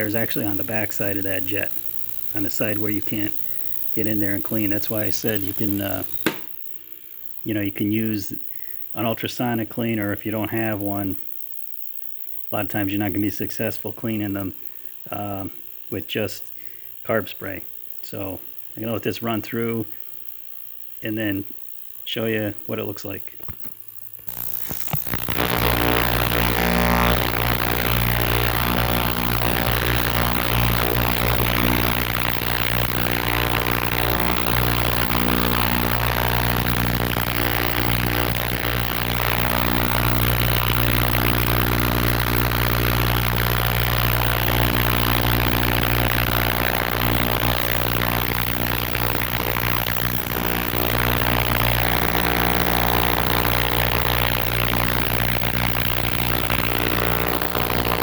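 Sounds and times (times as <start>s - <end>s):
ultrasonic cleaner buzzing hum: 0.0s - 6.6s, 24.2s - 58.0s.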